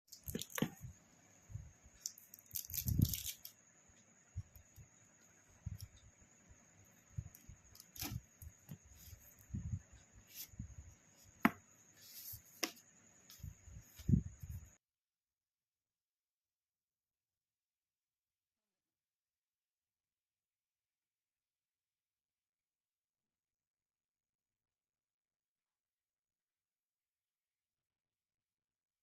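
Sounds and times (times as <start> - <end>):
faint high-pitched whine: 0.1 - 14.8.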